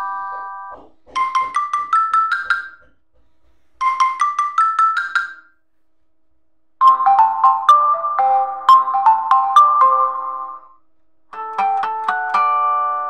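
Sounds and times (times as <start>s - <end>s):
marimba ringtone melody: 0.0s - 0.7s, 3.8s - 5.5s, 6.8s - 10.7s
fuller ringtone melody: 0.0s - 2.9s, 3.8s - 5.6s, 6.8s - 13.0s.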